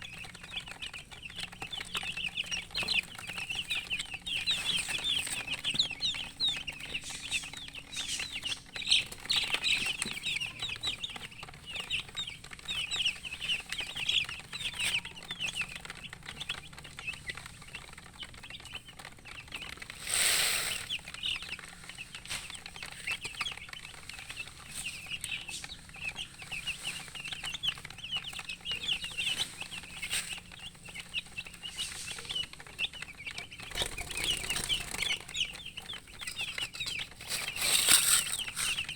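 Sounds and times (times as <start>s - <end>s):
chicks peeping: 0.0s - 38.9s
rustle or flap: 36.2s - 38.9s.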